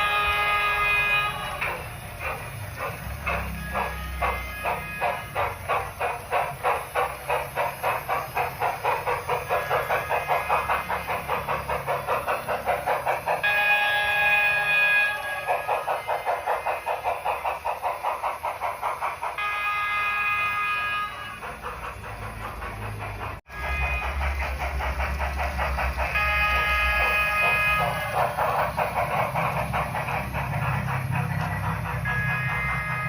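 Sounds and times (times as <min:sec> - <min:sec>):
chime steam whistle: 0:00.0 - 0:07.2, 0:07.8 - 0:18.3, 0:19.0 - 0:21.9, 0:23.5 - 0:24.5, 0:26.0 - 0:29.6, 0:31.8 - 0:33.0
steam locomotive chuffing: 0:00.0 - 0:33.0.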